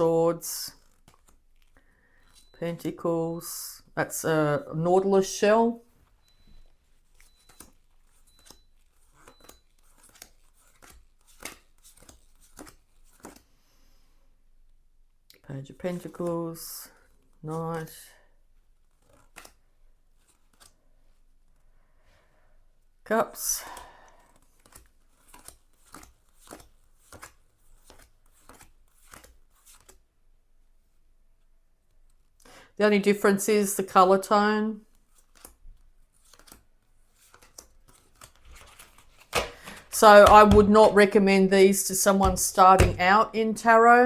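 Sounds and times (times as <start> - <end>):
cards snapping and clicking: 9.2 - 13.4, 19.0 - 19.6, 24.5 - 30.0, 36.2 - 36.6, 37.2 - 40.7.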